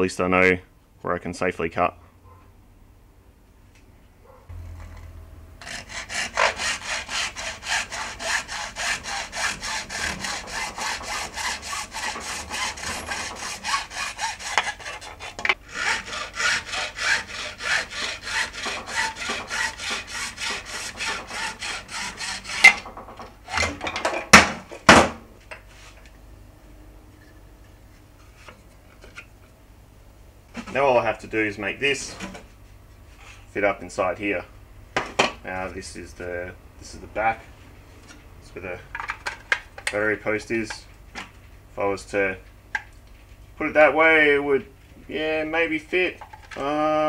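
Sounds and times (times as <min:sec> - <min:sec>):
hand saw cutting plastic: 0:05.6 - 0:22.9.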